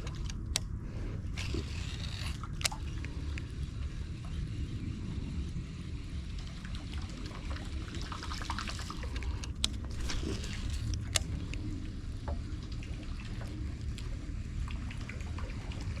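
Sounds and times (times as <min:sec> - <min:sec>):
sharp clicks: 0:01.4 - 0:03.5
water splashing and trickling: 0:05.9 - 0:11.6, 0:12.2 - 0:16.0.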